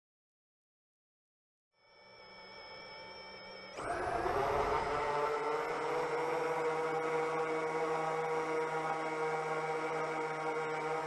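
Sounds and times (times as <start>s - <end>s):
drone motors whirring: 3.4s - 11.0s.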